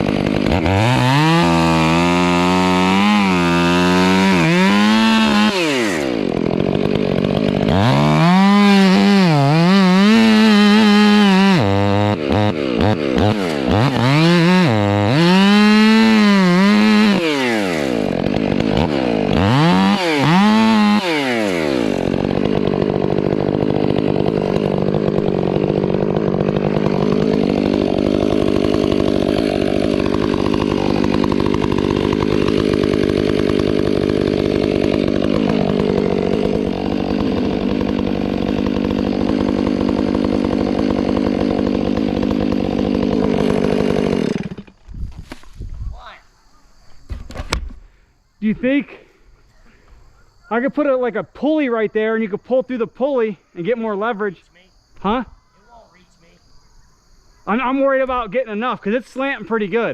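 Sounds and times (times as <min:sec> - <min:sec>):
chainsaw revving and cutting wood: 0:00.0 - 0:45.6, 0:59.2 - 0:59.9.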